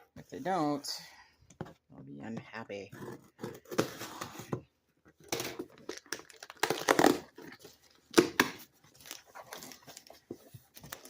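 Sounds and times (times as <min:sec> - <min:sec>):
packaging crinkling and tearing: 0:05.2 - 0:10.2.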